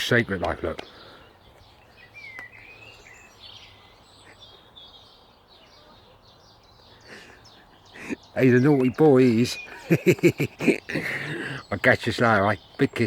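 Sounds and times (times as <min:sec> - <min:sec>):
faint bird chirps and whistles: 0:00.9 - 0:09.9.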